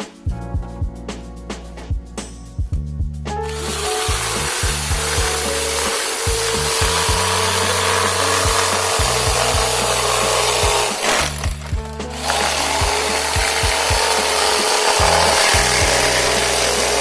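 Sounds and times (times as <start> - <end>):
background music: 0.0 - 17.0
electric motor rushing hiss: 3.4 - 17.0.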